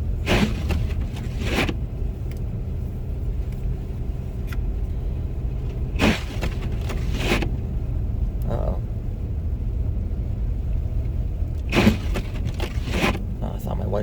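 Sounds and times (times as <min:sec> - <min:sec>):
car tyres and engine rumble: 0:00.0 - 0:14.0
windshield wipers sweeping: 0:00.1 - 0:01.8, 0:05.6 - 0:07.6, 0:11.6 - 0:13.3.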